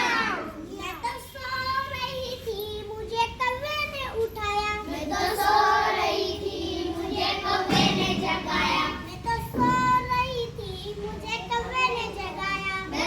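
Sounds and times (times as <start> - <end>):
children singing: 0.0 - 0.7, 4.9 - 10.3, 11.7 - 13.0.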